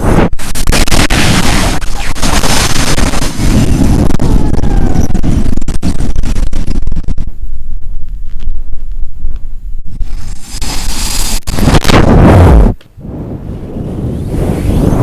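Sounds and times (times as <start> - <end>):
wind buffeting microphone: 0.0 - 15.0
rushing wind hiss: 10.0 - 15.0.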